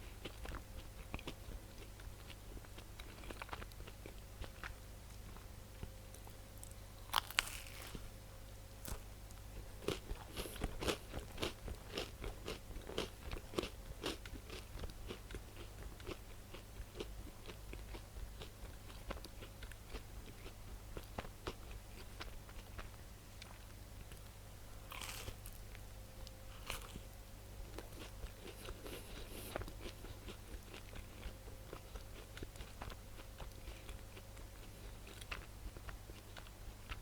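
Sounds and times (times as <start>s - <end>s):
crisp crunchy chewing: 6.2s - 8.1s, 8.8s - 24.3s, 24.9s - 37.0s.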